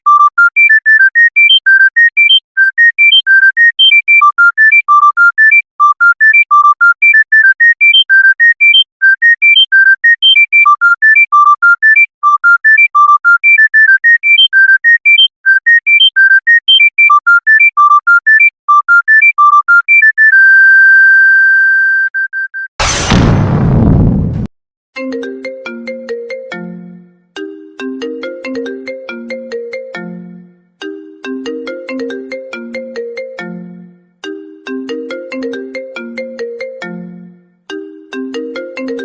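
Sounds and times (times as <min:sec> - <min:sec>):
electronic phone ringtone beeps: 0:00.1 - 0:22.7.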